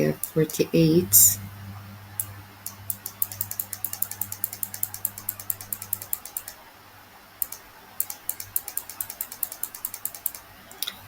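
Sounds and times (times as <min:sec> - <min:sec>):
mouse scroll wheel clicking: 0:02.6 - 0:06.6, 0:07.4 - 0:11.0.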